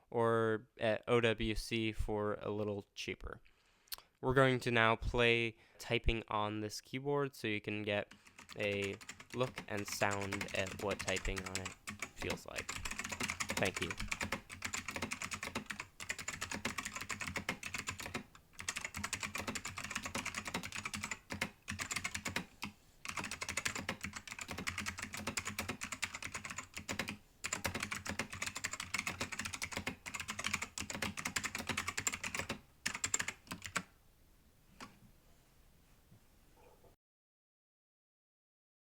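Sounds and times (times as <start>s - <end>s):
mechanical keyboard typing: 8.1s - 33.9s.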